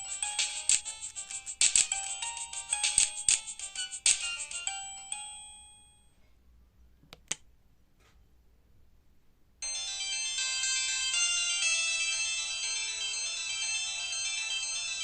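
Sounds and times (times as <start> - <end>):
phone ringtone melody: 0.0 - 6.1, 9.6 - 15.0.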